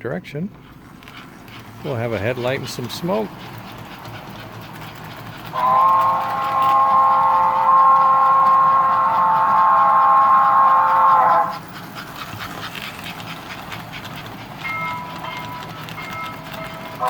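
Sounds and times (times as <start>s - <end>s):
model train running on track: 0.0s - 17.0s
model train horn blaring: 5.5s - 11.6s.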